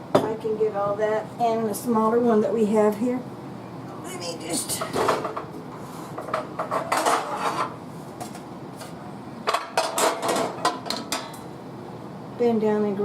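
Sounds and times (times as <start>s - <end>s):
baking dishes clattering: 6.1s - 7.8s, 9.5s - 11.4s.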